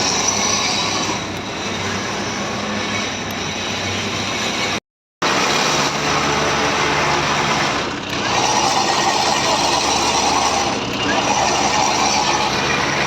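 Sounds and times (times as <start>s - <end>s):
road noise: 0.0s - 13.0s
tow truck engine running: 0.0s - 13.0s.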